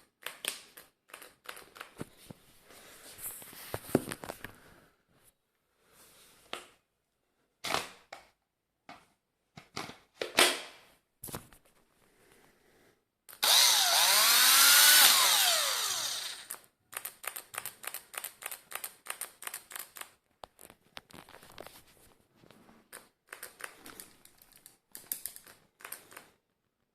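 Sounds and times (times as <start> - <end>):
electric drill motor in bursts: 13.4 - 16.6.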